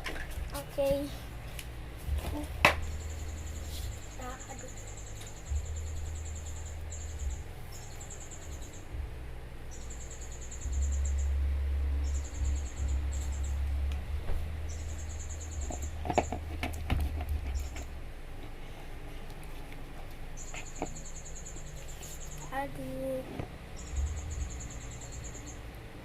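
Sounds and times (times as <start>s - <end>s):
low hum: 0.0s - 26.0s
insects chirping in high trills: 2.8s - 13.9s, 14.6s - 17.8s, 20.2s - 25.7s.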